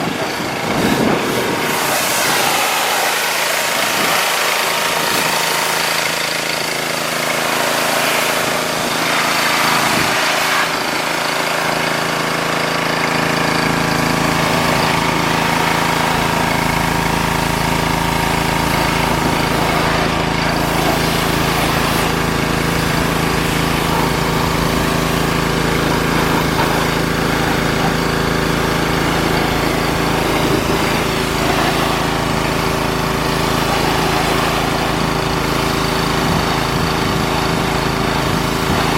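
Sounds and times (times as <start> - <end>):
pressure washer running: 0.0 - 38.9.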